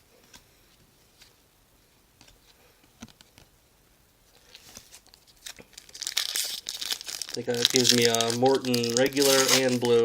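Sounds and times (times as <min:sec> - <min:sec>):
cards being flipped through: 0:07.5 - 0:10.0.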